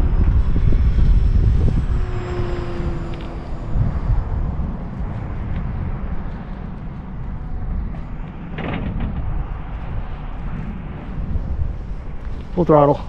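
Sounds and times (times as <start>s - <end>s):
distant model plane motor whine: 0.0s - 7.1s
wind buffeting microphone: 0.0s - 13.0s.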